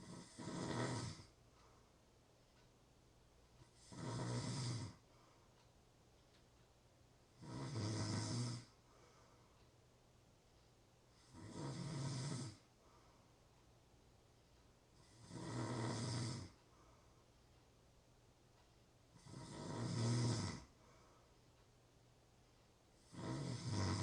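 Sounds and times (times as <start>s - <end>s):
low buzzing snores: 0.0s - 1.4s, 3.7s - 5.2s, 7.4s - 9.2s, 11.1s - 13.0s, 15.0s - 16.9s, 19.1s - 21.2s, 23.0s - 24.0s.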